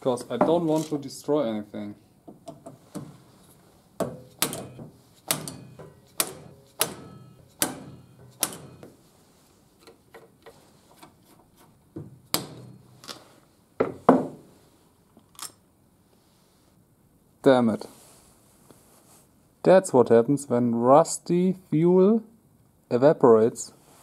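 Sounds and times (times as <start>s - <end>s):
hammer striking impact driver: 4.0s - 8.9s.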